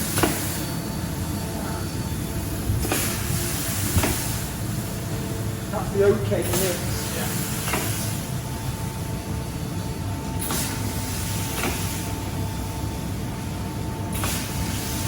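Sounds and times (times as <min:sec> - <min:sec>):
factory machinery drone: 0:00.0 - 0:15.0
hiss: 0:02.8 - 0:04.5, 0:06.4 - 0:08.2, 0:10.4 - 0:12.1, 0:14.1 - 0:15.0.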